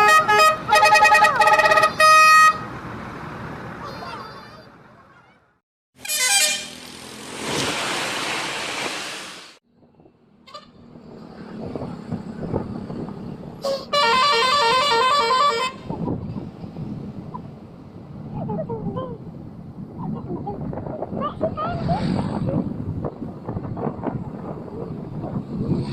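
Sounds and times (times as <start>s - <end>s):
bus musical horn tune: 0.0s - 2.7s, 6.0s - 7.0s, 13.6s - 15.9s
loud noisy rush: 6.7s - 9.6s.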